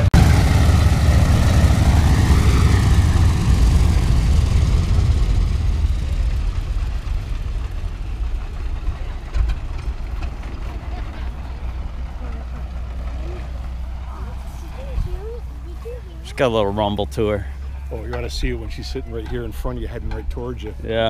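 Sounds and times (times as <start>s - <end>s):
piston engines rumbling: 0.0s - 21.0s.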